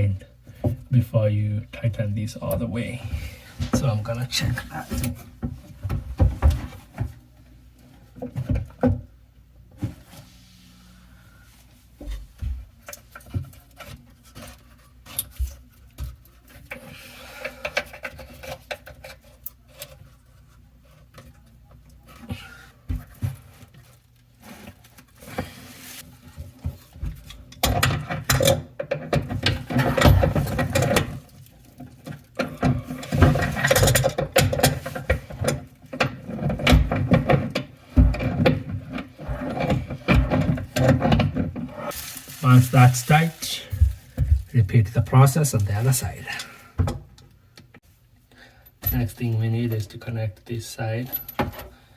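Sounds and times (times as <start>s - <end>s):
rattling and scraping: 23.1s - 44.5s.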